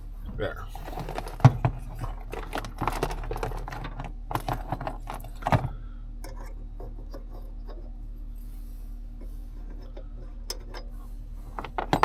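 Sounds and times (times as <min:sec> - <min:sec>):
small parts clicking and rattling: 0:00.6 - 0:08.0, 0:09.2 - 0:12.0.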